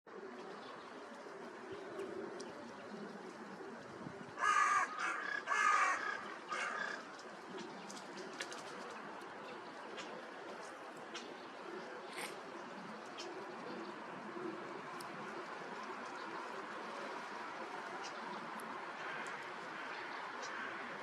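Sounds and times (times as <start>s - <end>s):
crow cawing: 4.4s - 7.1s, 19.0s - 21.0s.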